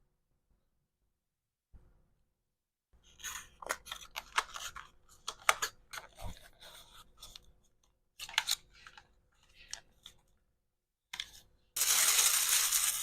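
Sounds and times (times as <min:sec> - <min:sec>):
packaging crinkling: 0:11.8 - 0:13.0.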